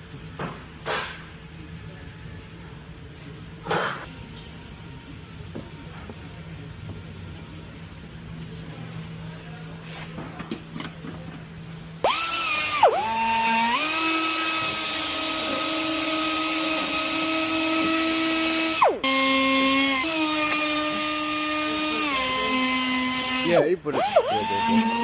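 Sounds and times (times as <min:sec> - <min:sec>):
electric drill whining: 0:12.0 - 0:25.0.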